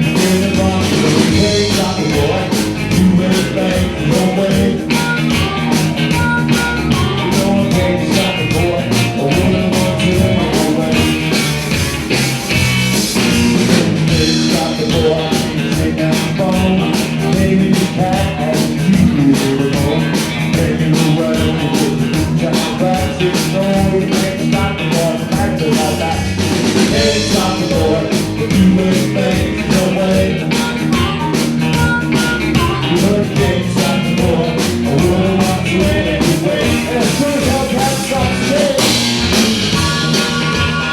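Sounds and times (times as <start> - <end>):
person singing: 0.0 - 11.6, 13.7 - 40.9
drums: 0.0 - 40.9
guitar: 0.0 - 40.9.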